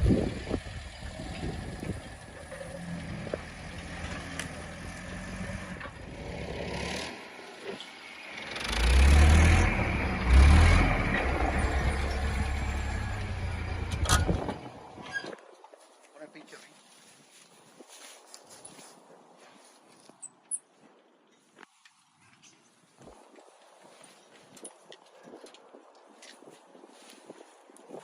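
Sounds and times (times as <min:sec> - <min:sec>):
vehicle engine revving: 0:00.0 - 0:14.9.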